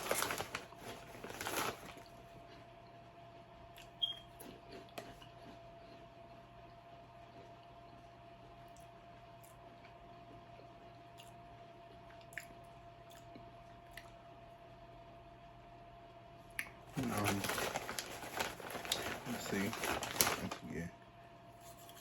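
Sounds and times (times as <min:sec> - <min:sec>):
person eating chips: 0:17.0 - 0:20.7.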